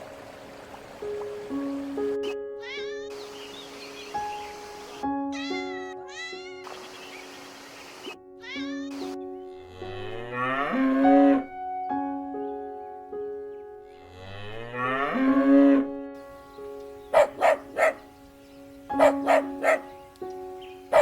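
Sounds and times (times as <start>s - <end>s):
background music: 0.0s - 21.0s
cow mooing: 9.5s - 11.5s, 13.9s - 15.9s.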